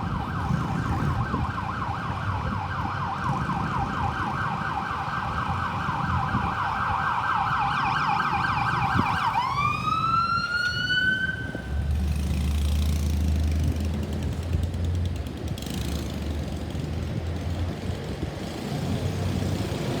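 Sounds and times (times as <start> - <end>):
ambulance siren: 0.0 - 11.9
vehicle engine rumble: 0.0 - 20.0.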